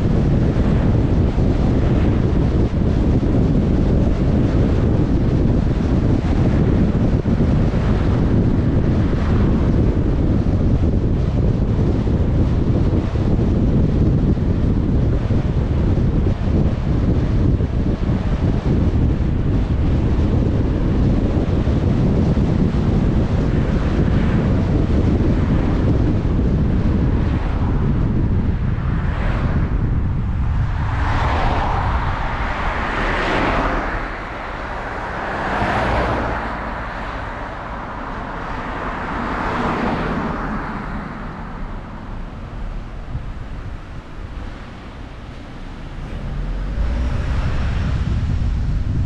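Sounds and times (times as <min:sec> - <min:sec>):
car tyres and engine rumble: 0:00.0 - 0:49.0
rising and falling whooshes: 0:29.2 - 0:49.0.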